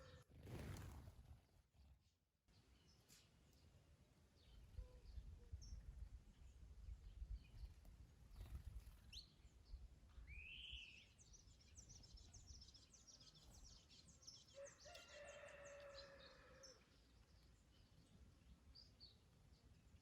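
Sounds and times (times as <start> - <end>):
wind rumble on microphone: 4.6 - 10.5
rooster crowing: 14.6 - 16.8.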